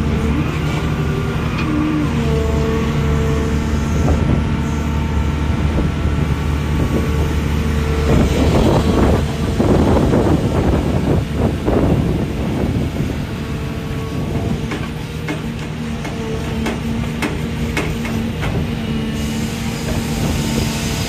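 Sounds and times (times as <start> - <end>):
drilling rig engine humming: 0.0 - 21.0.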